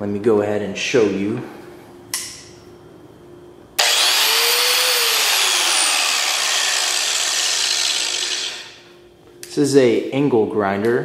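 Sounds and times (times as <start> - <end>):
angle grinder whining: 3.8 - 8.9.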